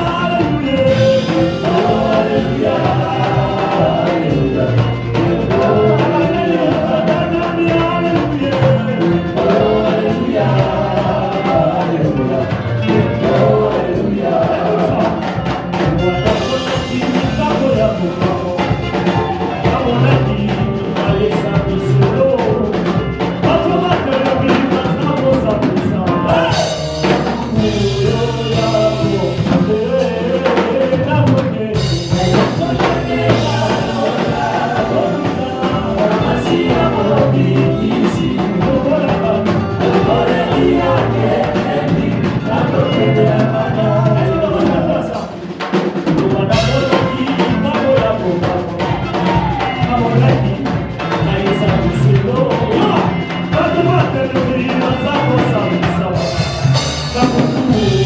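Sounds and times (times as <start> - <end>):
gospel singing over drum kit: 0.0 - 58.0.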